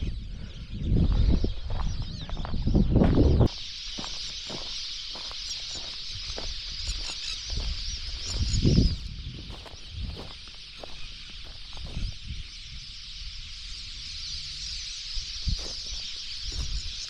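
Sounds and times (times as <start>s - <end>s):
ducks whistling in chorus: 3.4s - 17.0s.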